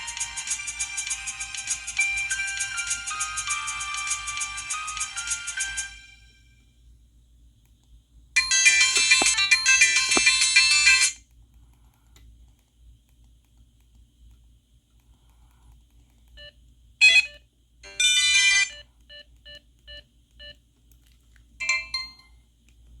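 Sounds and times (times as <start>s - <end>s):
faint hum: 0.0s - 23.0s
phone electronic tones: 8.5s - 11.1s, 16.4s - 20.5s.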